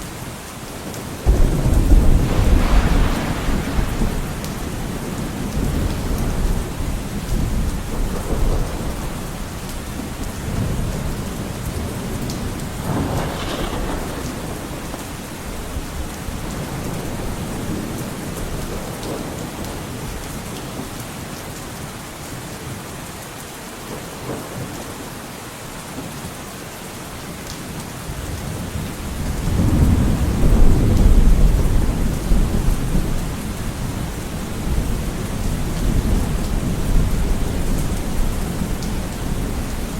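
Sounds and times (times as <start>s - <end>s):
steady rain falling: 0.0s - 39.9s
low rolling thunder: 1.2s - 19.8s, 28.4s - 39.9s.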